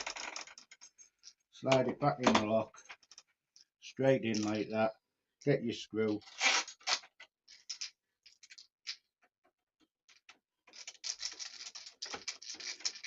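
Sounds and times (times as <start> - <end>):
small metal clicks and scrapes: 10.2 - 13.0.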